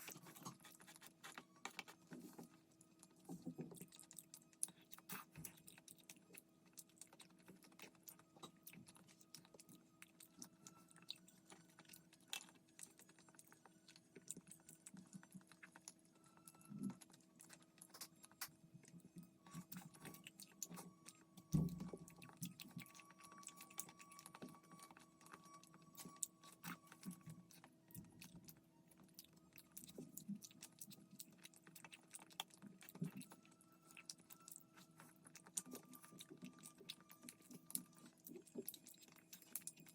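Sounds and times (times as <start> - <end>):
faint steady hum: 0.0 - 39.9
soft chewing: 0.0 - 39.9.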